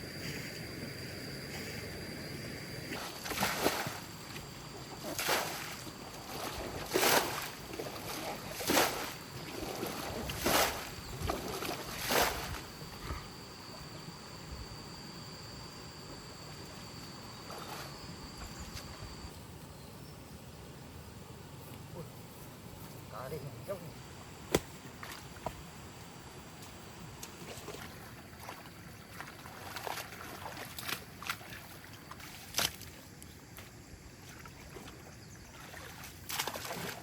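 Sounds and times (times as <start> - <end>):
swishing splashing strokes in water: 5.0 - 12.6, 35.5 - 37.0
faint high steady tone: 12.2 - 24.3.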